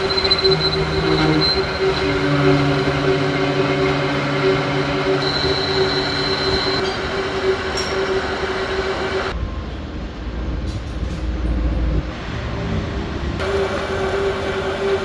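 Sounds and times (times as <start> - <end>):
tractor engine running: 0.0 - 9.4.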